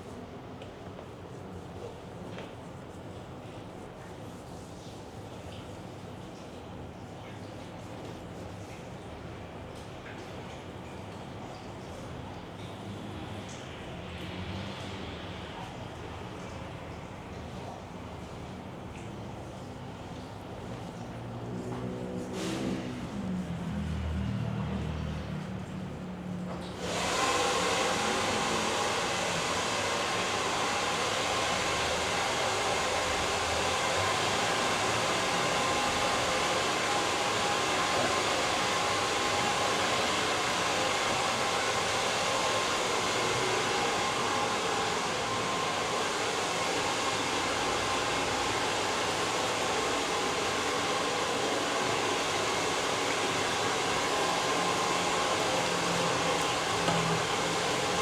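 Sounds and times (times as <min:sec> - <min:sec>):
hair dryer blowing: 0:26.6 - 0:58.0.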